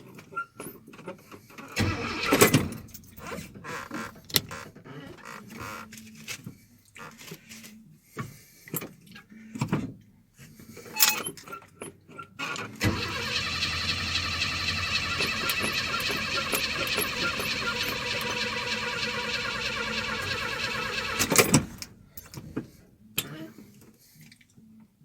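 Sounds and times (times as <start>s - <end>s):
pickup engine running: 12.8s - 21.8s.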